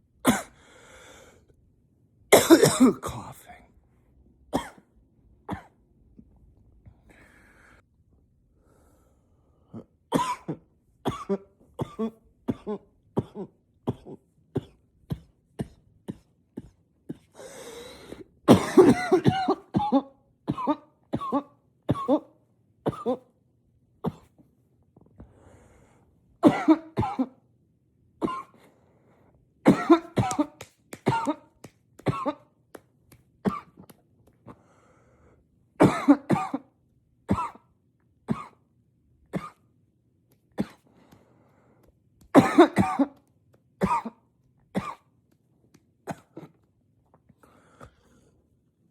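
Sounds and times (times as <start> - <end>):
man coughing into pillow: 0.3 - 0.5, 2.3 - 3.6, 4.6 - 4.8, 5.5 - 5.8, 10.1 - 17.4, 18.5 - 22.3, 22.9 - 23.3, 24.0 - 24.3, 26.4 - 27.4, 28.2 - 28.6, 29.7 - 32.5, 33.4 - 33.9, 35.8 - 36.7, 37.3 - 37.6, 38.3 - 38.6, 42.4 - 43.2, 43.8 - 44.2, 44.8 - 45.1
noisy breath: 0.5 - 1.6, 6.9 - 7.9, 8.5 - 10.0, 16.6 - 18.4, 25.2 - 26.2, 28.5 - 29.4, 34.4 - 35.6, 40.8 - 42.0, 47.4 - 48.6.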